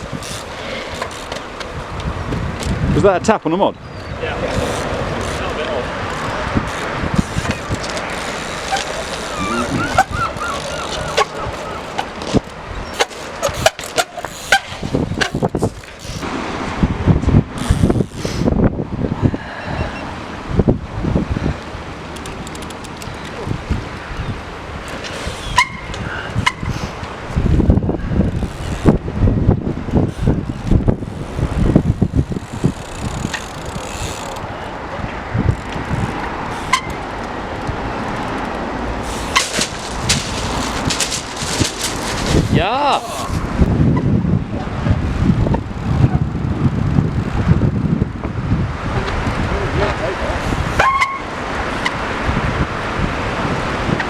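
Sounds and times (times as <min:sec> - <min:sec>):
short squeaks: 0:00.0 - 0:01.7, 0:03.9 - 0:16.3, 0:17.6 - 0:18.4, 0:22.1 - 0:23.2, 0:24.2 - 0:29.1, 0:29.9 - 0:34.5, 0:35.4 - 0:43.7, 0:50.3 - 0:52.0
sharp clicks: 0:04.5 - 0:16.3, 0:17.6 - 0:18.3, 0:22.1 - 0:23.4, 0:29.9 - 0:34.5, 0:35.6 - 0:42.4.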